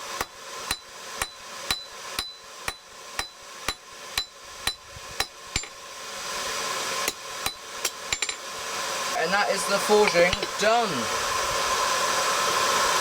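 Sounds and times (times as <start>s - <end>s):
hammer striking steel on anvil: 0.2s - 5.8s, 7.0s - 8.4s, 10.0s - 10.6s.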